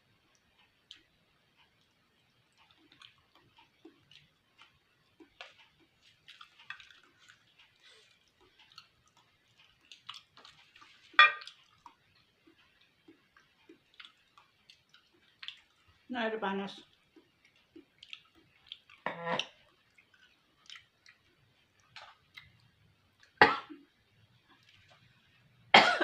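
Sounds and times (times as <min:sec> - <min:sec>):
chewing: 0:00.3 - 0:16.1, 0:16.8 - 0:25.5
wet mouth clicks and smacks: 0:02.6 - 0:15.8, 0:16.9 - 0:23.4.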